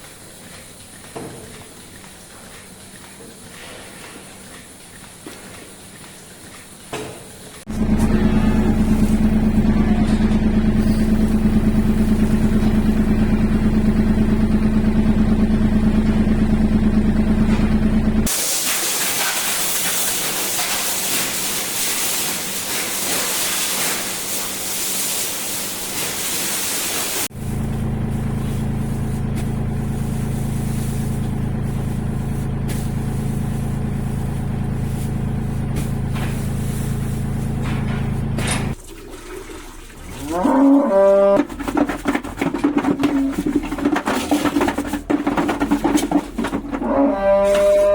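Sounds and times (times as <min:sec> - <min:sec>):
farm machinery motor hum: 0:00.0 - 0:18.4, 0:20.1 - 0:38.8, 0:39.8 - 0:47.9
loud even hiss: 0:18.3 - 0:27.3.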